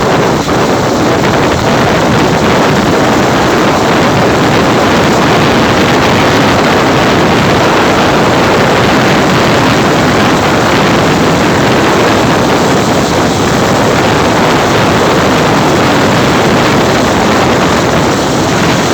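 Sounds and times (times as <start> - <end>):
wind blowing over microphone: 0.0 - 18.9.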